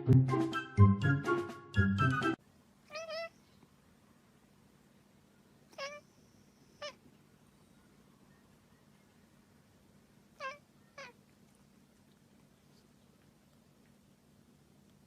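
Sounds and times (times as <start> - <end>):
music: 0.0 - 2.4
cat meowing: 2.9 - 3.4, 5.7 - 6.1, 6.8 - 7.0, 10.4 - 11.2.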